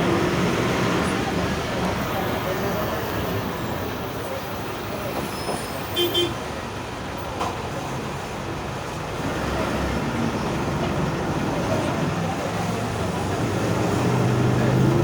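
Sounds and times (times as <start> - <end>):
diesel bus engine growling: 0.0 - 5.8, 6.5 - 15.0.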